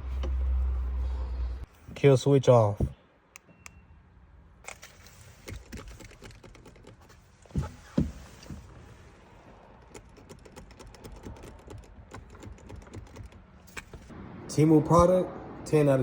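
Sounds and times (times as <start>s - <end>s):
faint short beep: 3.4s - 4.0s.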